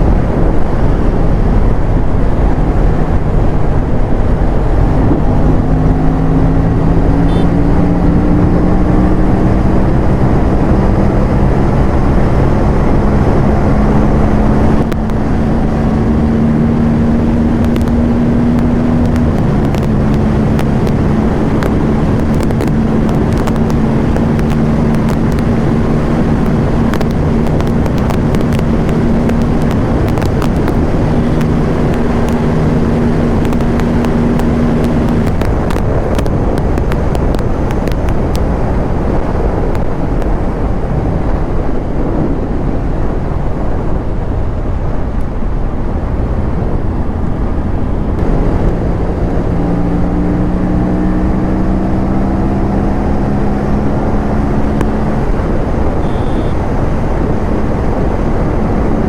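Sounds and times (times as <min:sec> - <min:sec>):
motorcycle engine: 0:00.0 - 0:40.4, 0:45.4 - 0:57.9
wind rush: 0:00.0 - 0:59.0
sharp clicks: 0:14.8 - 0:15.5, 0:17.6 - 0:38.6.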